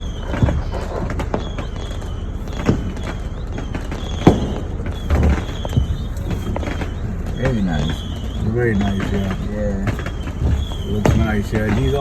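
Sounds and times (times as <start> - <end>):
background din: 0.0 - 12.0
fireworks bangs: 0.0 - 12.0.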